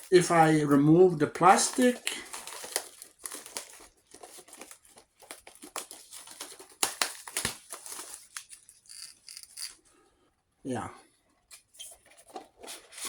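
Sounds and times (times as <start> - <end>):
plastic wrapping crinkling: 0.0 - 9.9.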